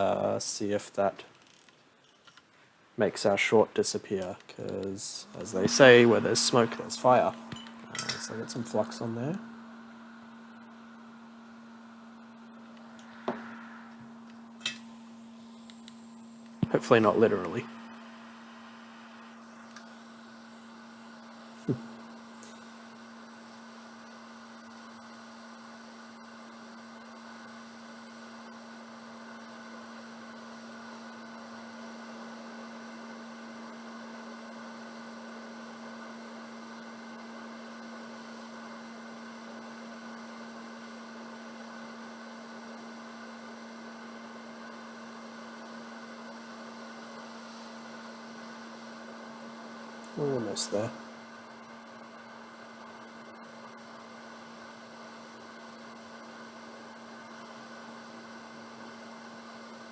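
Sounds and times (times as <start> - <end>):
hot air station blowing: 5.0 - 20.5.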